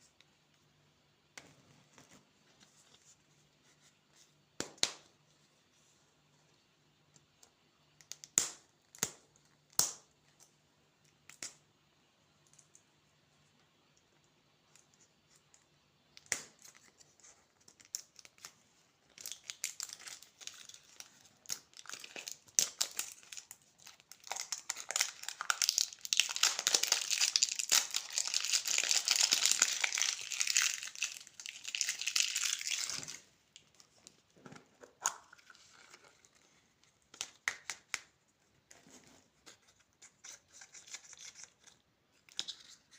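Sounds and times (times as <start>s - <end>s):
candy wrapper crinkling: 17.7s - 34.0s.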